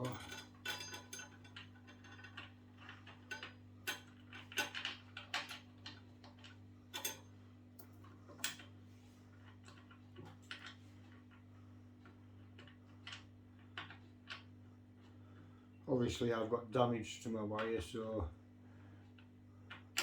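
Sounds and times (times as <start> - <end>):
metal parts clicking and tapping: 0.0 - 8.7
steady low hum: 5.4 - 19.8.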